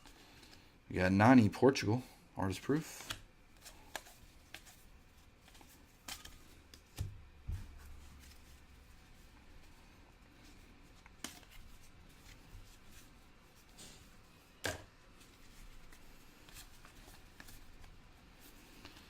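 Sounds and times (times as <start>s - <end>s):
trading cards rustling and clicking: 2.6s - 7.1s, 10.3s - 13.2s.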